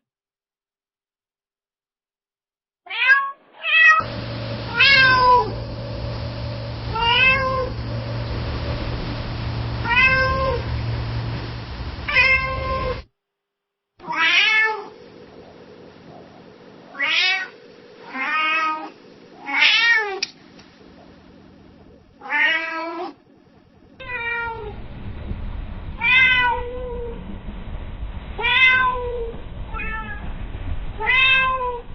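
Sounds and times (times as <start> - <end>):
steady low hum: 4.0 - 13.1, 14.7 - 31.9
cat meowing: 9.8 - 10.6, 12.1 - 12.9.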